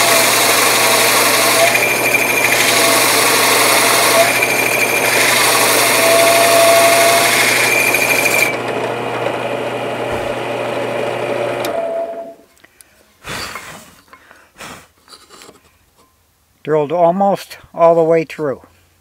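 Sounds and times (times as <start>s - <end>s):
hole saw squealing in wood: 0.0s - 8.7s
drill press motor humming: 0.0s - 12.4s.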